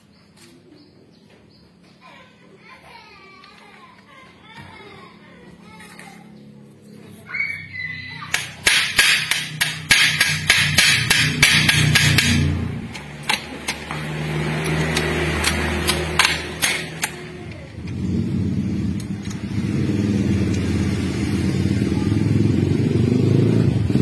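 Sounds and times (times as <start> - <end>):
hammer striking metal: 8.3 - 17.2.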